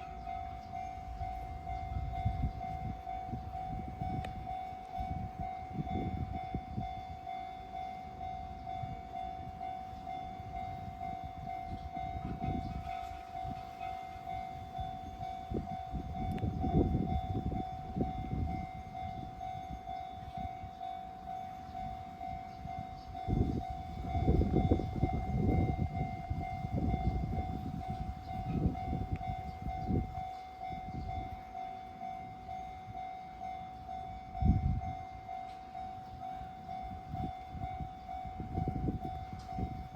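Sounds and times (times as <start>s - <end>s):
level crossing warning bell: 0.0s - 39.9s
train wheels rumbling and clattering: 8.5s - 39.9s.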